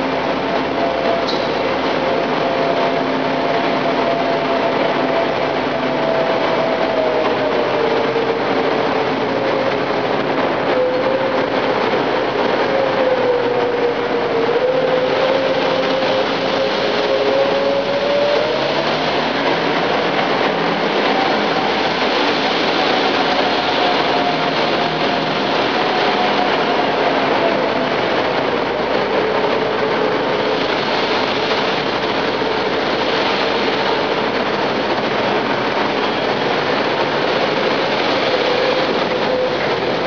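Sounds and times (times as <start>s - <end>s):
engine-driven whine: 0.0s - 40.0s.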